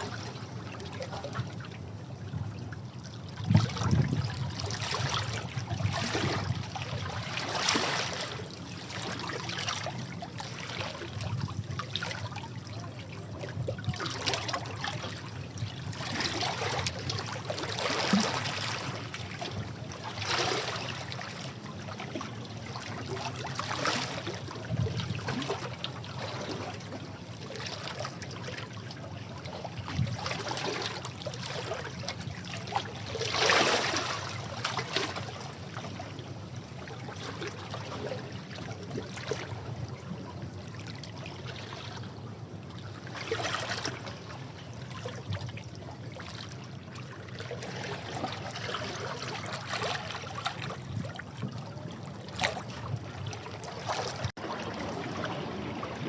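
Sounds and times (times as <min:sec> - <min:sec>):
sea waves washing against rocks: 0:53.9 - 0:56.0.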